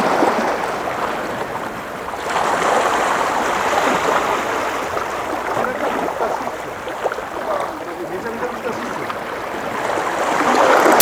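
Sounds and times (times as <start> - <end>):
water rushing at shoreline: 0.0 - 11.0.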